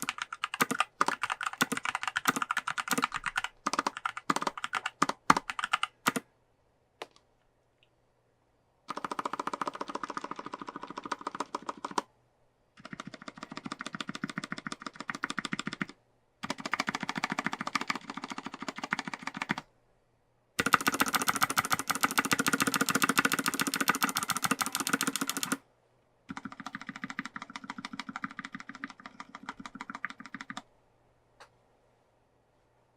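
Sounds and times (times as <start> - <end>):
fast typing on mechanical keyboard: 0.0 - 6.2, 8.9 - 12.1, 12.8 - 19.6, 20.6 - 25.6, 26.3 - 30.7.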